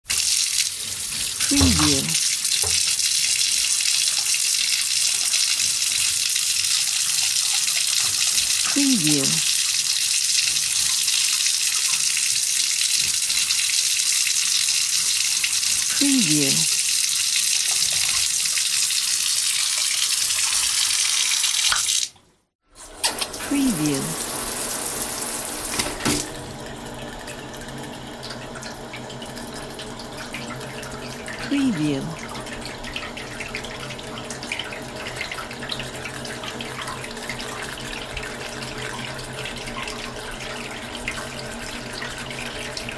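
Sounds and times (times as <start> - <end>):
faucet running into bathtub: 0.1 - 8.8
faucet water pouring into tub: 0.1 - 31.4, 32.0 - 42.9.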